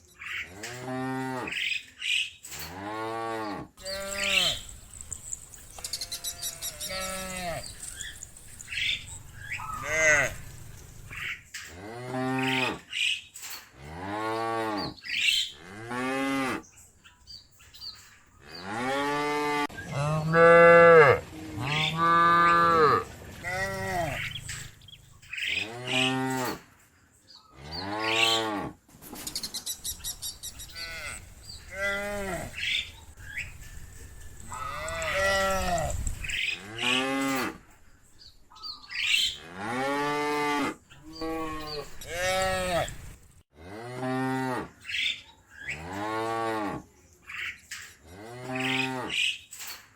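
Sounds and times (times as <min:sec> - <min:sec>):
cattle mooing: 0:02.7 - 0:11.2, 0:18.6 - 0:24.8, 0:30.7 - 0:32.9, 0:34.3 - 0:37.6, 0:39.4 - 0:44.7.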